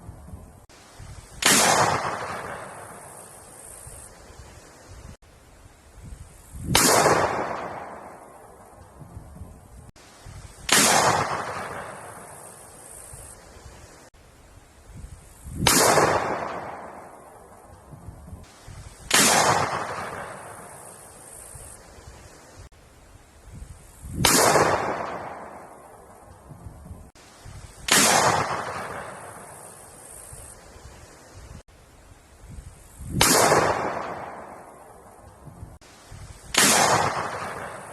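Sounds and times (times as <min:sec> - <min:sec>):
gunshots with echo: 0:01.4 - 0:03.0, 0:06.7 - 0:08.2, 0:10.7 - 0:12.2, 0:15.6 - 0:17.2, 0:19.1 - 0:20.7, 0:24.2 - 0:25.8, 0:27.9 - 0:29.4, 0:33.2 - 0:34.8, 0:36.5 - 0:37.9.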